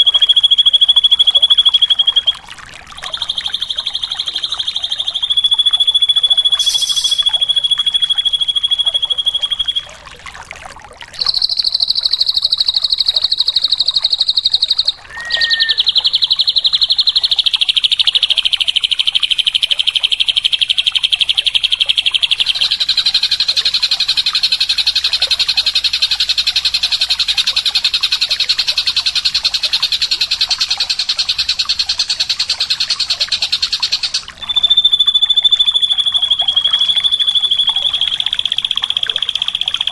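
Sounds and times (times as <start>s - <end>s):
bird trilling: 0.0s - 10.0s, 11.2s - 23.5s, 32.2s - 39.9s
short lower chirp: 3.1s - 9.9s, 14.9s - 16.1s.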